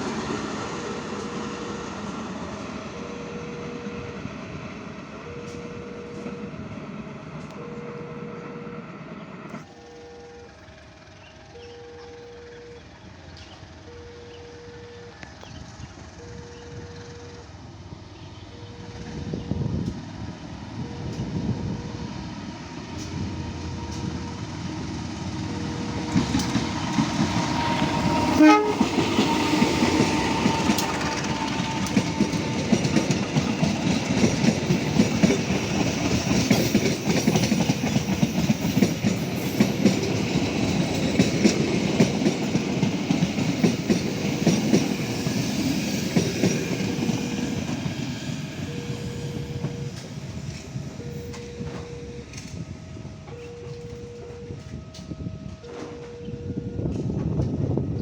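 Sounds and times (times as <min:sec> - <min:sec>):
level crossing warning tone: 0:02.8 - 0:06.8, 0:07.4 - 0:17.6, 0:18.2 - 0:58.0
train wheels clattering: 0:22.9 - 0:52.7
locomotive horn blast: 0:25.5 - 0:33.0.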